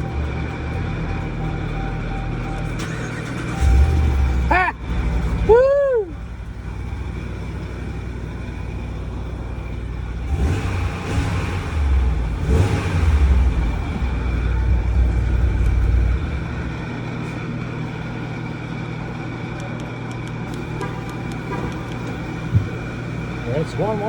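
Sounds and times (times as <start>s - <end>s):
truck engine idling and revving: 0.0s - 24.0s.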